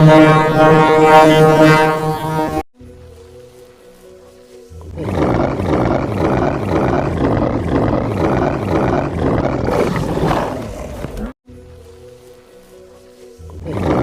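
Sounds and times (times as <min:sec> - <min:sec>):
looped growling roar: 0:04.9 - 0:11.4, 0:13.6 - 0:14.0.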